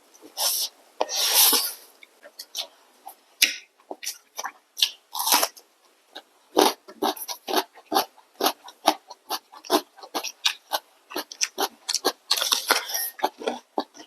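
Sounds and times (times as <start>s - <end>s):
wet chewing and mouth smacks: 6.2s - 14.0s.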